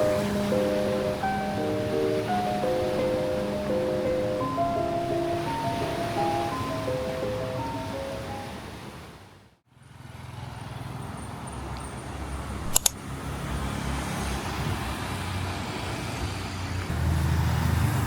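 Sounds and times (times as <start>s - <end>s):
music: 0.0s - 8.6s
traffic engines and road noise: 0.0s - 18.0s
sharp clicks: 12.7s - 13.0s.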